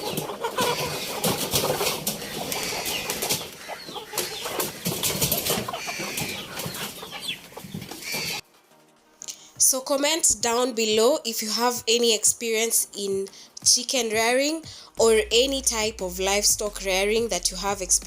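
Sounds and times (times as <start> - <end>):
chickens clucking: 0.0 - 8.4
sharp knocks and rustles: 0.0 - 8.4.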